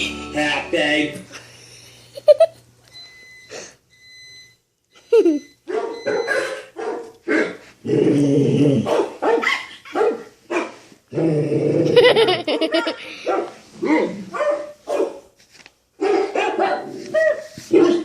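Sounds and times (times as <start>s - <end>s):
dog barking: 5.7s - 7.7s, 8.8s - 10.8s, 12.5s - 15.3s, 16.0s - 18.0s.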